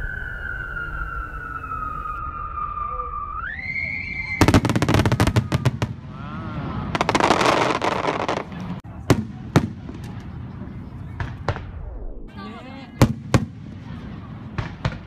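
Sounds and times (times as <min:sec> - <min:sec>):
firework whistling: 0:00.0 - 0:08.5
firework crackling pops: 0:14.5 - 0:15.0.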